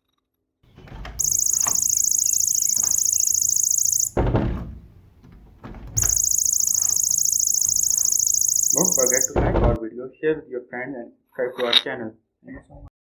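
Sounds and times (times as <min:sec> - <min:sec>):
thump: 0:00.8 - 0:09.8
shrill electronic buzzer: 0:01.2 - 0:04.2, 0:06.0 - 0:09.5.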